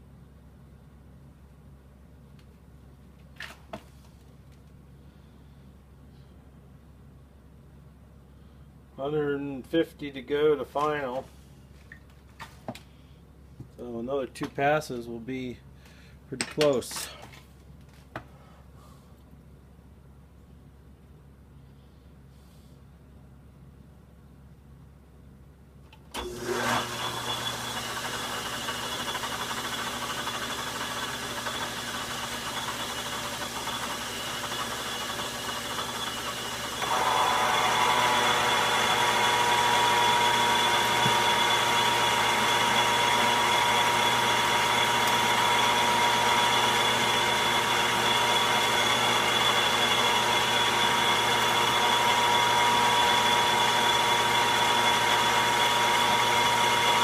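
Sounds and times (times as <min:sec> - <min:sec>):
lathe tool cutting steel: 0:26.2 - 0:57.0
metal lathe running: 0:26.2 - 0:57.0.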